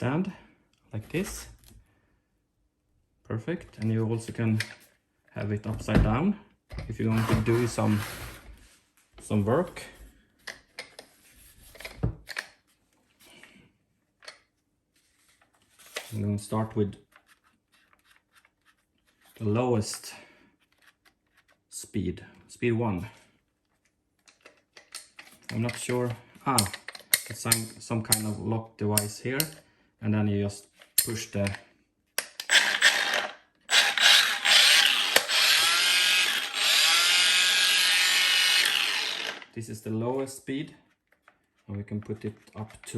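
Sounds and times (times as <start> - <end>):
angle grinder running: 7.1 - 8.5, 32.5 - 39.5
plastic clicks and rubbing of grinder: 24.2 - 28.3, 32.2 - 37.0.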